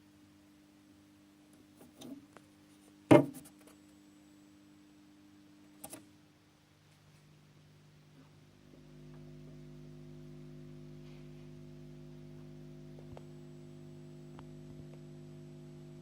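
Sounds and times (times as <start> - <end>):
sharp knock: 3.1 - 3.5
subwoofer low hum: 8.1 - 16.0.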